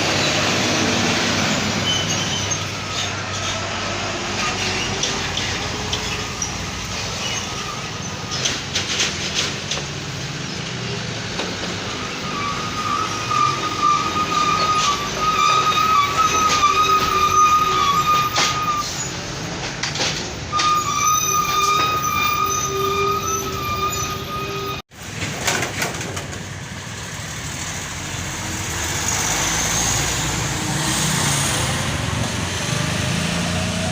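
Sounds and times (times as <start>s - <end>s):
heavy road traffic: 0.0s - 33.9s
high horn-like tone: 20.6s - 24.8s.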